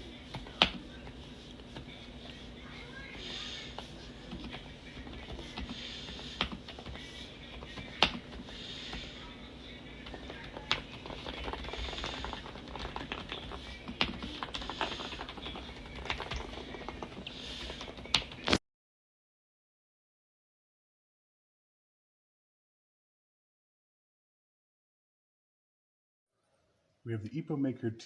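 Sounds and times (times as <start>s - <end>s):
mechanical keyboard typing: 10.5s - 17.2s.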